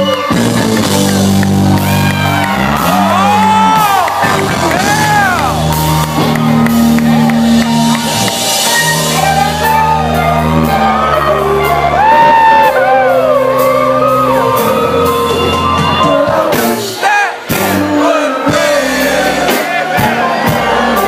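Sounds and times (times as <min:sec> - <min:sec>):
crowd whooping and shouting: 0:00.0 - 0:21.0
live soul band with singing: 0:07.2 - 0:21.0.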